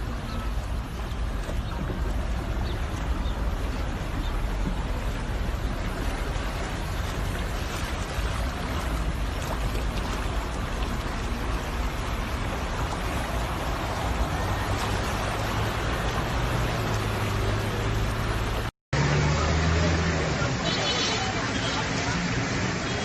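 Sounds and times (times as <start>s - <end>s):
floodwater rushing: 0.0s - 23.0s.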